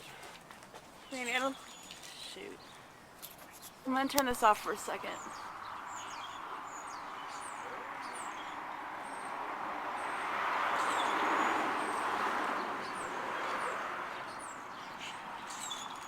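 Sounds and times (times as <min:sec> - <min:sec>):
small birds chirping: 0:00.0 - 0:16.0
vehicle passing by: 0:04.6 - 0:15.7.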